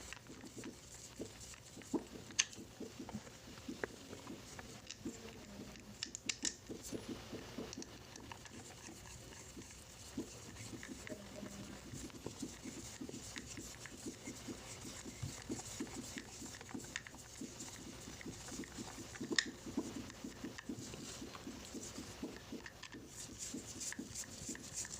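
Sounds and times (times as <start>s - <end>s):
small plastic parts clicking: 6.0s - 6.6s.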